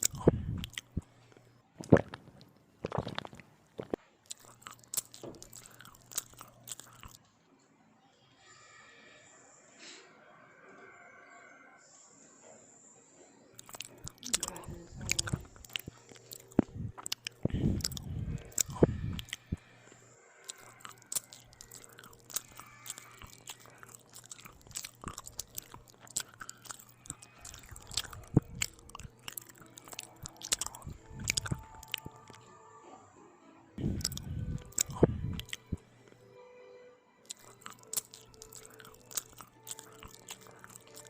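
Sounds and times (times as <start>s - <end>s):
mouth clicks and crunches: 0.0s - 7.2s, 13.6s - 32.4s, 33.8s - 36.2s, 37.3s - 41.0s
chewing bread: 0.0s - 7.3s, 13.6s - 32.4s, 33.8s - 36.2s, 37.3s - 41.0s.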